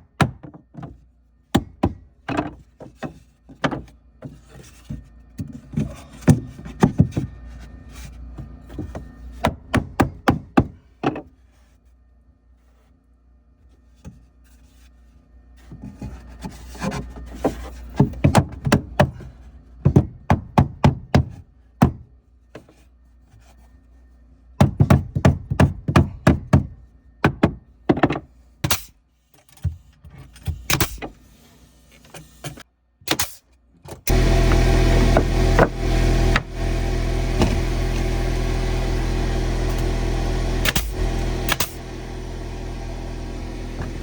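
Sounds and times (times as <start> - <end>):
loud steady motor: 34.1 - 44.0.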